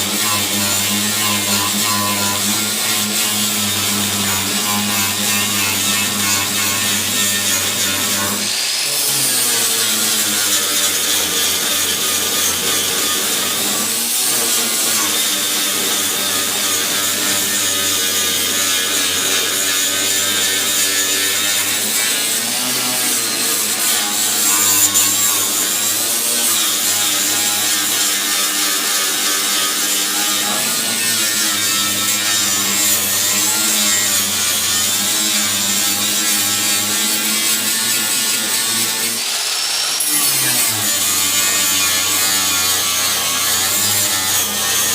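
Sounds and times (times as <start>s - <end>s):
angle grinder grinding metal: 0.0s - 44.9s.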